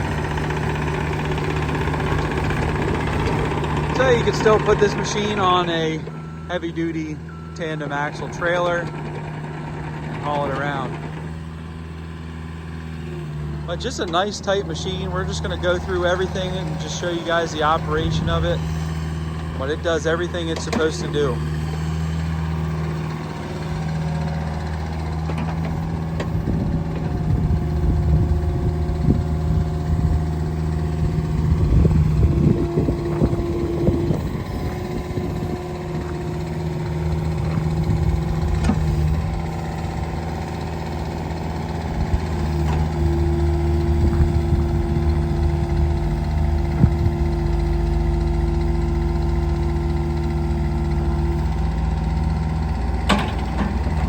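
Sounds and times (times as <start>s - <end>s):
diesel engine running: 0.0s - 54.0s
higher hydraulic hums: 0.0s - 54.0s
metal clanks: 53.0s - 54.0s.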